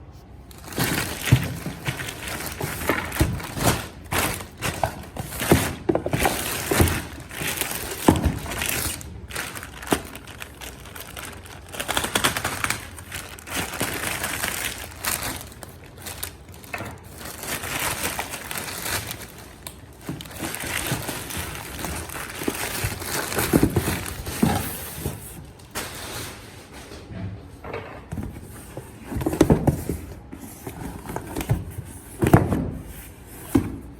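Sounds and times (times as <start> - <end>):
wrapping crinkling: 0.5 - 26.4.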